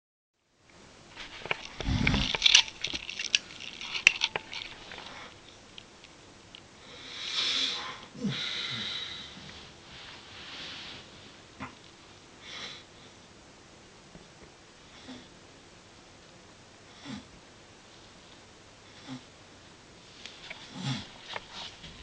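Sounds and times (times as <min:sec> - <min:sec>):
crackly clicks: 0:00.7 - 0:06.7
person snoring: 0:01.7 - 0:02.4, 0:06.9 - 0:09.4
long noisy breath: 0:06.8 - 0:11.1.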